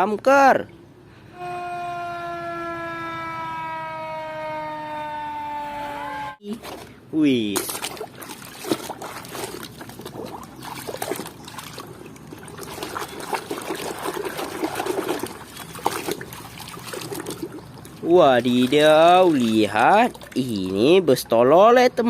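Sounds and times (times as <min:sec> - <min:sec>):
water trickling and splashing: 0:06.5 - 0:21.8.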